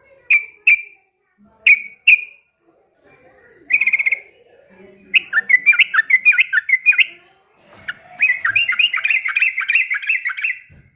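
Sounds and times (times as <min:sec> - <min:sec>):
bulbul warbling song: 0:08.2 - 0:10.7.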